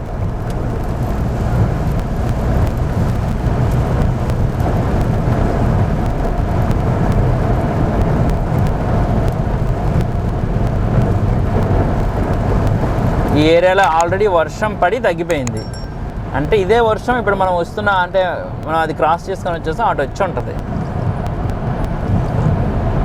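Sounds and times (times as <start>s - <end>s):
faint ticks: 0.0s - 14.2s, 15.3s - 18.0s, 18.6s - 22.5s
engine and tyre rumble: 0.0s - 23.0s.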